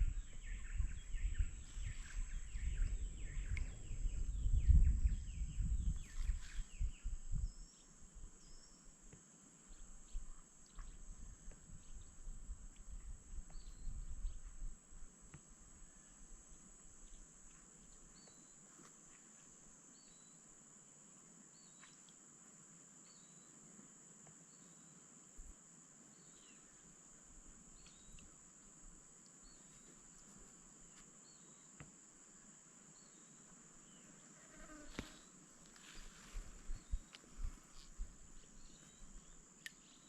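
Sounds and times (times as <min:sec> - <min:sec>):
insects trilling: 0:26.1 - 0:40.0.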